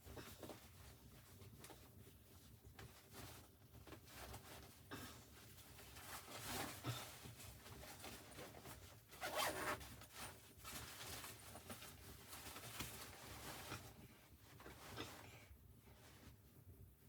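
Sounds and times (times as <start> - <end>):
zipper being pulled: 9.2 - 9.8.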